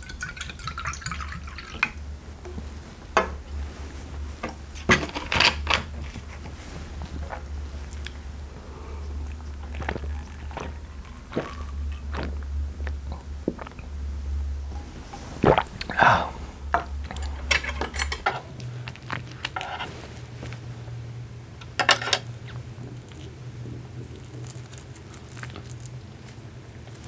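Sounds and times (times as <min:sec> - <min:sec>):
low hum: 0:00.0 - 0:19.2
chewing and mouth sounds: 0:06.1 - 0:17.4, 0:18.6 - 0:19.7, 0:22.8 - 0:27.0.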